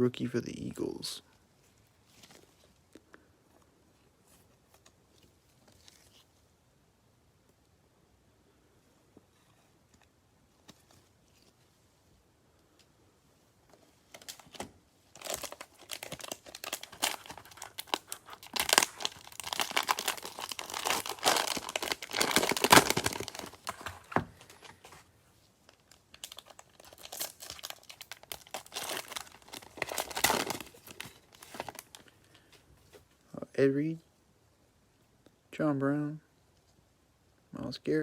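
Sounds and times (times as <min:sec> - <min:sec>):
cellophane wrapper crinkling: 0:13.7 - 0:32.3.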